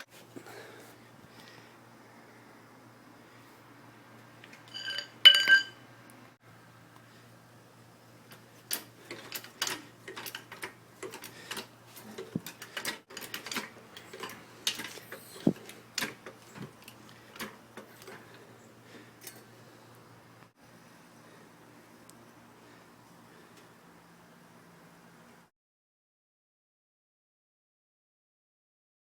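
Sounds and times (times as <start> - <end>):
rear axle clicking: 8.2 - 18.5.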